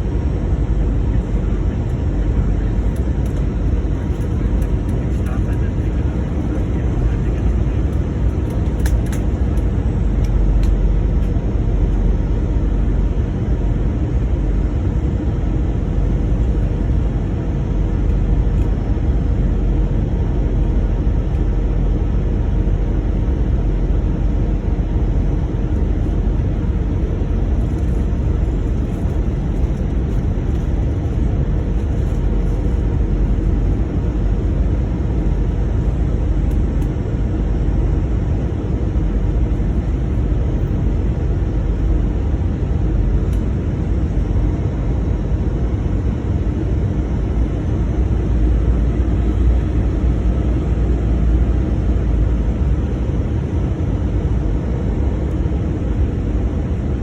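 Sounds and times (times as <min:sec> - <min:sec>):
airplane cabin engine drone: 0:00.0 - 0:57.0.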